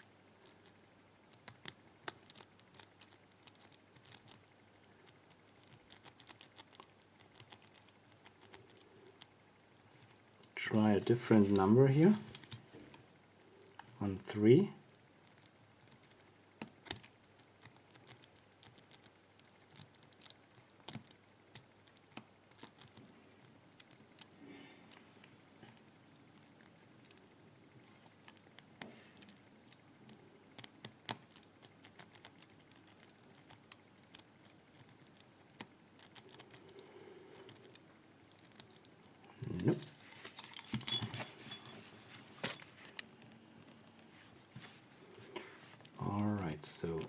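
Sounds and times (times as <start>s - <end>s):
padlock shackle rattling: 40.4s - 41.7s.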